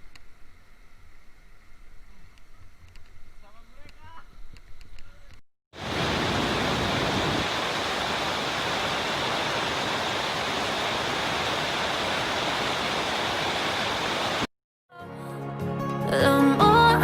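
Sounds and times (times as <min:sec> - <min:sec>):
waterfall rushing: 0:05.8 - 0:14.5.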